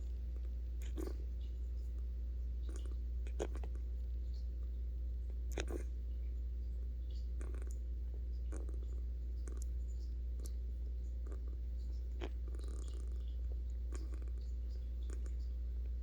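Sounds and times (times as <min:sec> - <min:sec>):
pet snoring softly: 0:05.5 - 0:05.9, 0:07.4 - 0:07.8, 0:08.5 - 0:09.7, 0:12.2 - 0:15.4.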